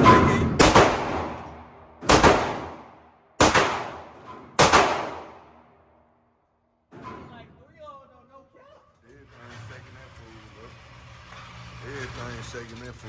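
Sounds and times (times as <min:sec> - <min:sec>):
gunshots with long echo: 0:00.0 - 0:05.9.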